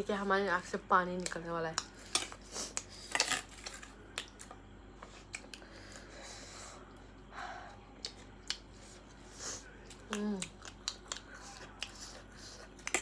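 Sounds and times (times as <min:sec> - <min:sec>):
chewing and lip smacks: 0:08.0 - 0:09.2, 0:09.8 - 0:13.0.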